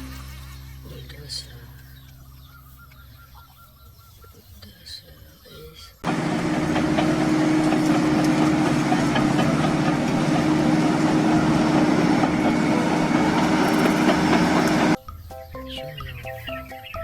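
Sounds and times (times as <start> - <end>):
small motor whirring: 12.9 - 15.0.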